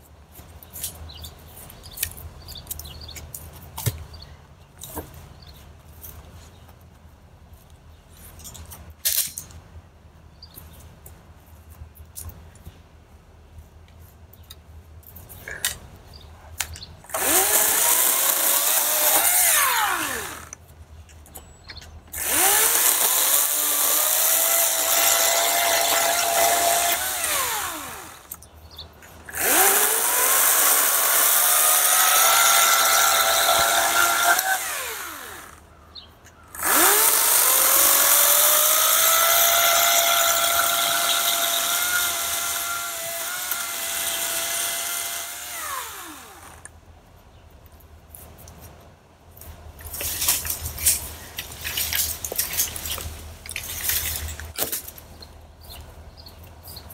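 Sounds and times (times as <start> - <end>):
electric chainsaw motor whining: 17.1 - 20.6, 22.2 - 28.4, 29.3 - 35.6, 36.6 - 46.7.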